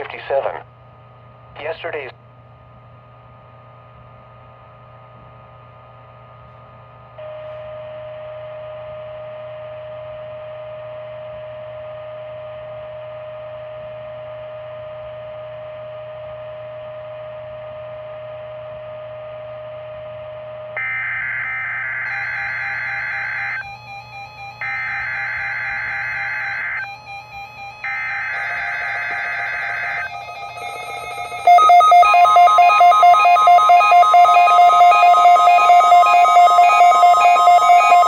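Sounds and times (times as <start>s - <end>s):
low hum and static: 0.0s - 38.0s
steady mid-pitched tone: 24.7s - 38.0s
digital data burst: 27.9s - 38.0s.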